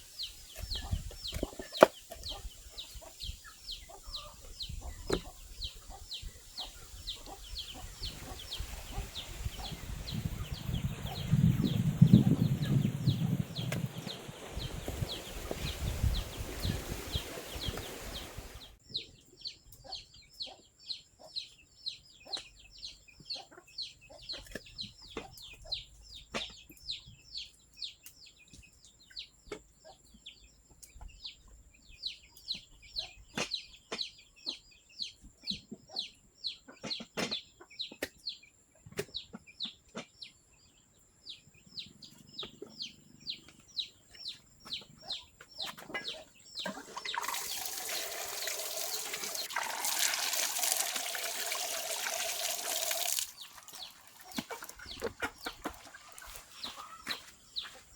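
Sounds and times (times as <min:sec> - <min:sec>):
chickens clucking: 0:00.2 - 0:18.7, 0:42.0 - 0:57.9
chicks peeping: 0:00.2 - 0:49.9, 0:52.2 - 0:57.9.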